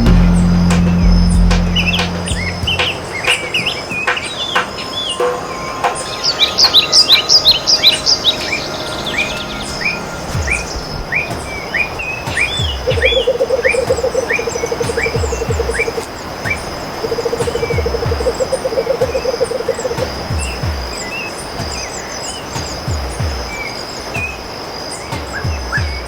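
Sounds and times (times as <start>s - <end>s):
low buzzing trill: 0.0s - 4.0s.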